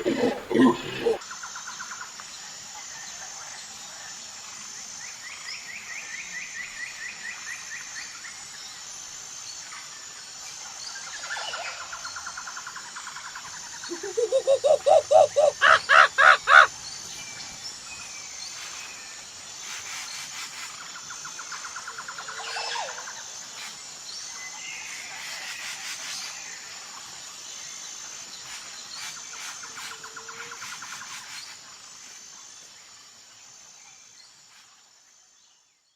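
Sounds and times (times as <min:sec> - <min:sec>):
animal calls: 0:00.0 - 0:01.2, 0:13.9 - 0:16.7
high insect drone: 0:13.6 - 0:35.3.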